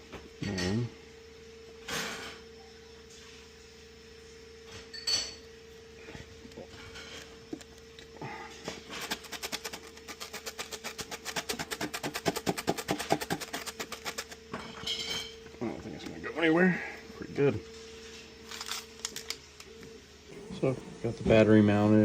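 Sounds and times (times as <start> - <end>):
faint steady hum: 0.0 - 22.0.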